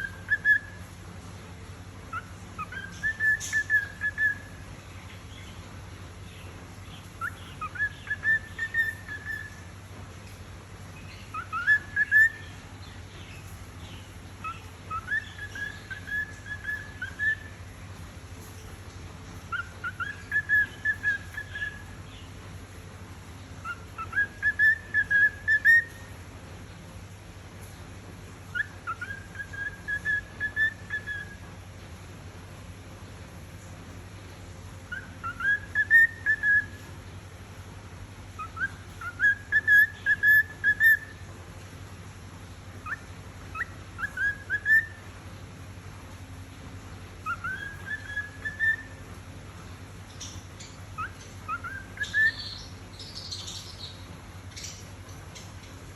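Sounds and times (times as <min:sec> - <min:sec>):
cockatiel whistling: 0:00.0 - 0:00.8, 0:02.1 - 0:04.5, 0:07.2 - 0:09.5, 0:11.3 - 0:12.5, 0:14.4 - 0:17.5, 0:19.5 - 0:21.8, 0:23.6 - 0:26.0, 0:28.5 - 0:31.4, 0:34.9 - 0:36.8, 0:38.4 - 0:41.1, 0:42.8 - 0:45.0, 0:47.2 - 0:49.0, 0:51.0 - 0:53.9.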